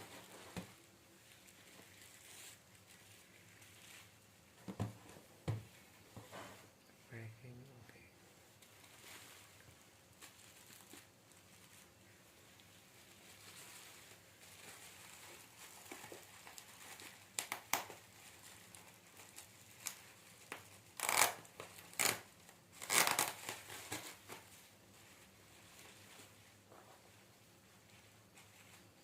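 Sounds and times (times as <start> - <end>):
packaging crinkling and tearing: 8.7 - 11.8, 13.2 - 24.5.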